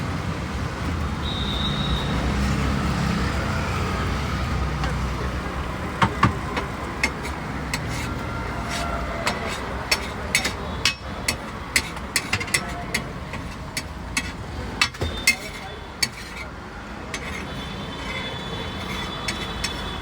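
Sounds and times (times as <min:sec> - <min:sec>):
road traffic rumble: 0:00.0 - 0:20.0
metal spatula scraping griddle: 0:07.0 - 0:20.0.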